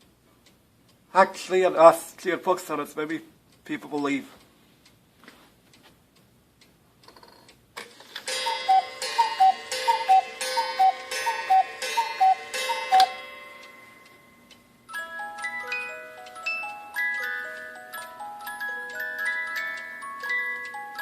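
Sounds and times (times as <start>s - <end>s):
clock ticking: 0.0s - 5.0s, 8.3s - 21.0s
clock movement click: 3.0s - 14.6s
two-note cuckoo calls: 8.3s - 13.2s.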